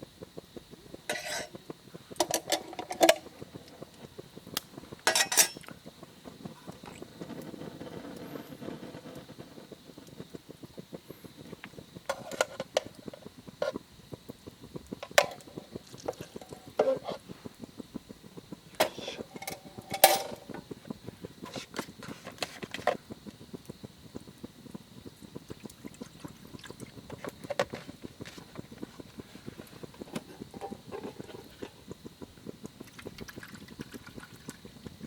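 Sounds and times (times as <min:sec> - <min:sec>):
wood fire crackling: 0:00.0 - 0:35.0
metal cookware clinking: 0:05.1 - 0:05.6.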